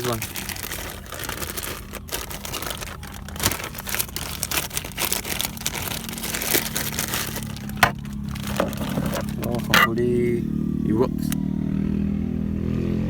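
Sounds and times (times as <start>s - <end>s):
plastic packaging crinkling: 0.0s - 9.9s.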